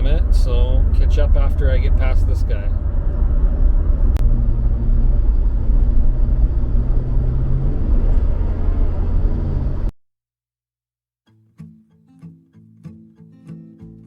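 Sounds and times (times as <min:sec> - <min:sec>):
car engine hum: 0:00.0 - 0:09.9
road rumble inside moving car: 0:00.0 - 0:09.9.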